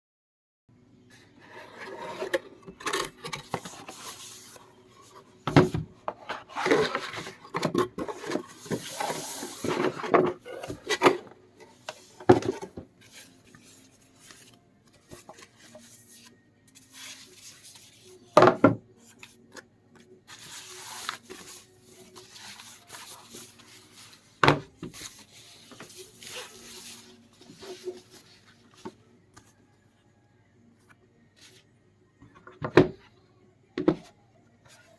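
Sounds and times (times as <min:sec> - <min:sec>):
objects rubbed and set down: 0:01.3 - 0:13.3.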